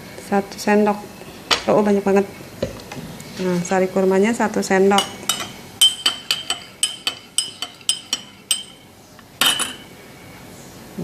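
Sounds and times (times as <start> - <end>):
spoon clinking against glass: 5.0 - 9.9.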